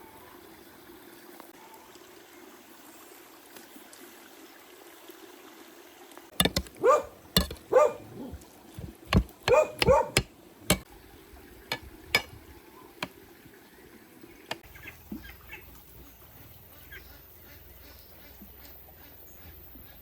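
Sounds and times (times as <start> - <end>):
sharp knocks: 6.4 - 10.9, 11.7 - 12.3.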